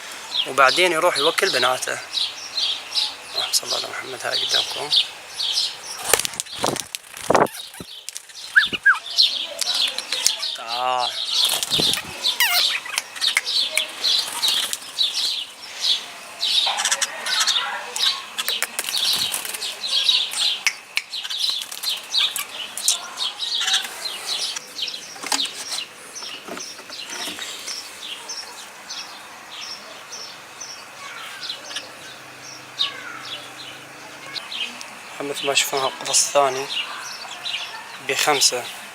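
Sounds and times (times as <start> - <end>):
birds chirping: 0.0 - 38.9
wings fluttering: 5.9 - 10.4, 11.3 - 15.4, 16.6 - 20.6, 21.2 - 24.6.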